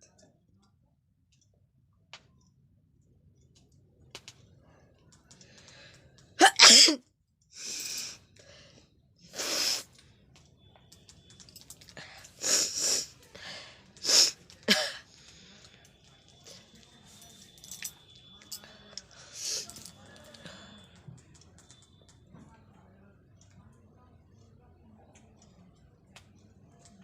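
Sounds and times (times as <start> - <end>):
person sneezing: 6.4 - 7.0
sharp breaths: 12.0 - 14.4.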